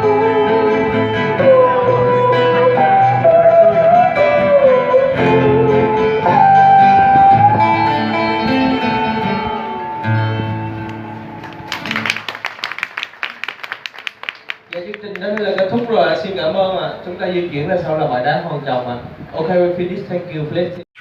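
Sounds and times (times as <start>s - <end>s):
audience clapping: 10.8s - 16.2s.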